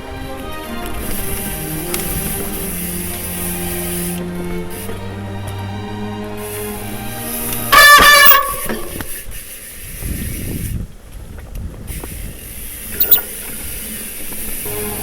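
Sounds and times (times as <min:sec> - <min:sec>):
tyres rumbling on trail: 0:00.0 - 0:15.0
bike disc brake squealing: 0:07.7 - 0:10.8, 0:11.9 - 0:14.6.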